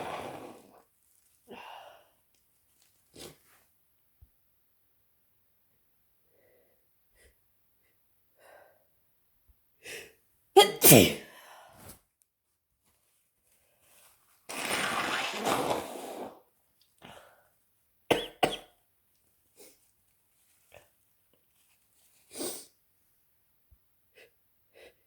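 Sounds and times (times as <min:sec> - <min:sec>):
person sneezing: 0:10.6 - 0:11.3
person sniffing: 0:22.3 - 0:22.7.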